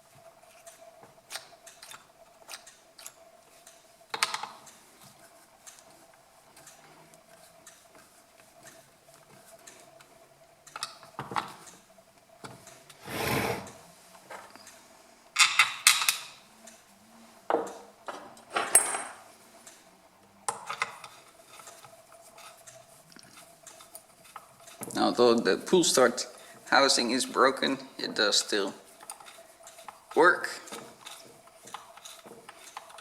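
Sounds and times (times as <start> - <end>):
clicks and knocks of handled parts: 0.6 - 4.8, 15.4 - 16.4, 20.5 - 25.0, 28.4 - 33.0
sliding noise: 13.0 - 13.8.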